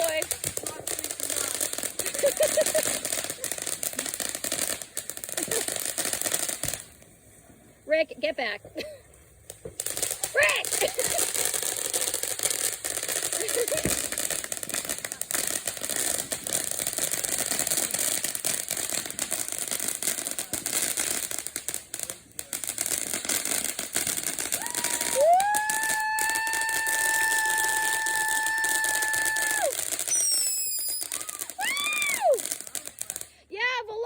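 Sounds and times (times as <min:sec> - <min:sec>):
firework hissing and crackling: 0:00.0 - 0:33.6
firework whistle: 0:24.1 - 0:33.2.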